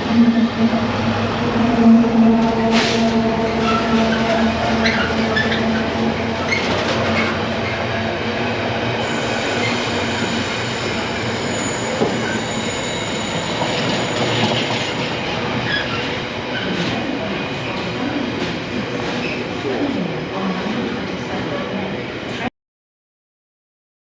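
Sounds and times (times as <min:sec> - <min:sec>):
train wheels on rails: 0:02.3 - 0:19.9.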